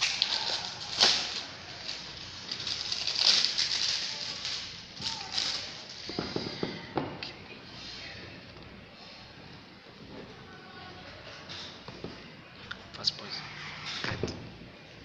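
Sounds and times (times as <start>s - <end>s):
packaging rustling and crinkling: 0.0s - 6.4s.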